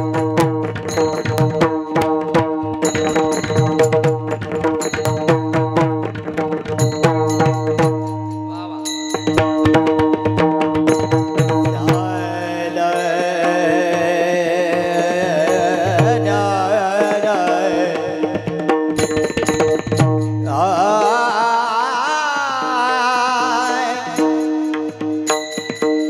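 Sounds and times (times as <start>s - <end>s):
drum strokes in quick runs: 0.0s - 8.5s, 9.2s - 12.2s, 15.6s - 21.0s
high ornamented singing voice: 8.4s - 9.1s, 11.5s - 18.6s, 20.4s - 25.1s.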